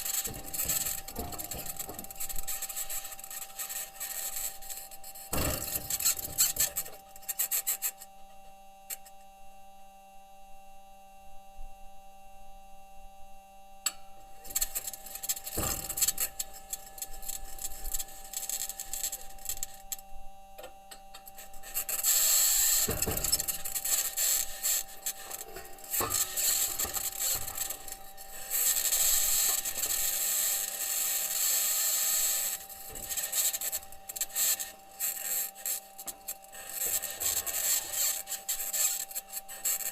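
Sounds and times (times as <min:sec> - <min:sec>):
metal wheels rolling over rock: 0:00.0 - 0:03.0, 0:21.8 - 0:34.2, 0:36.6 - 0:39.0
steady hum with faint whine: 0:00.0 - 0:39.9
harsh scraping: 0:21.4 - 0:39.9.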